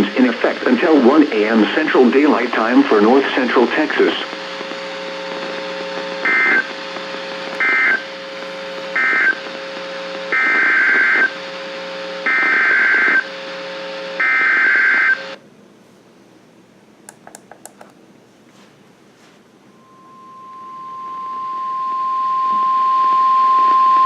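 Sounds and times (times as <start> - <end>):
radio hiss: 0.0 - 14.0
low hum: 19.6 - 24.0.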